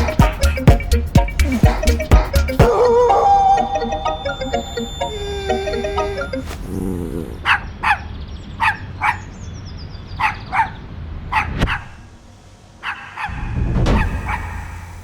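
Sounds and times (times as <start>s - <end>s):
dog barking: 6.4s - 9.3s, 10.2s - 12.0s, 12.8s - 13.4s.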